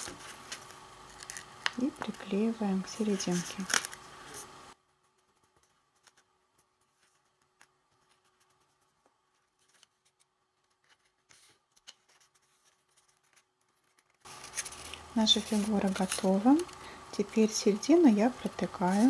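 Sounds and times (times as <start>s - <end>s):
faint steady hum: 0.0s - 19.0s
paper ticks and rustles: 5.0s - 17.4s.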